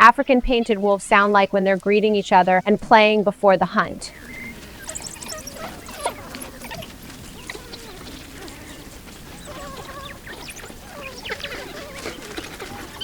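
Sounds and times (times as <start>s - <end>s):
warbling calls: 3.8s - 13.0s
wild dogs yipping: 4.1s - 13.0s.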